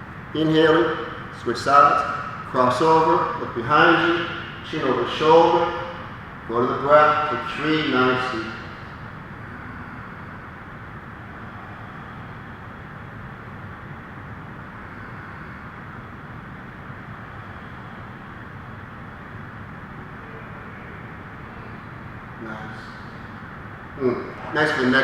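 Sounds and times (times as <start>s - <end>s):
low hum and hiss: 0.0s - 25.0s.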